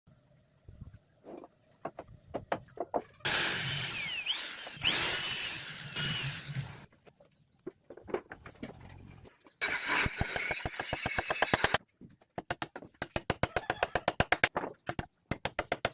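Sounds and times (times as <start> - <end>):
power tool running: 3.2 - 6.9, 9.6 - 11.8.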